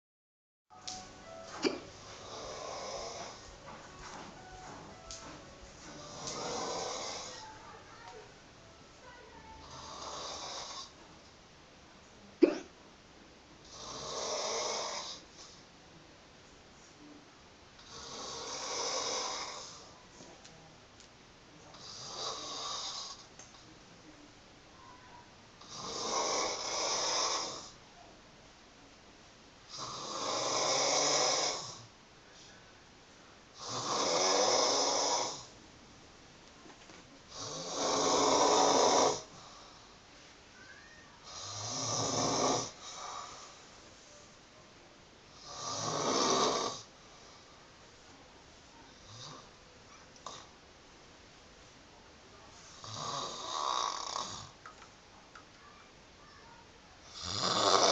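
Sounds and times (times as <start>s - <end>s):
woman snoring: 1.6s - 3.5s, 5.2s - 7.6s, 9.6s - 11.0s, 13.6s - 15.6s, 17.8s - 20.0s, 21.7s - 23.3s, 25.6s - 27.8s, 29.7s - 31.9s, 33.6s - 35.5s, 37.3s - 39.9s, 41.2s - 43.6s, 45.3s - 47.4s, 52.7s - 54.6s, 57.1s - 57.9s.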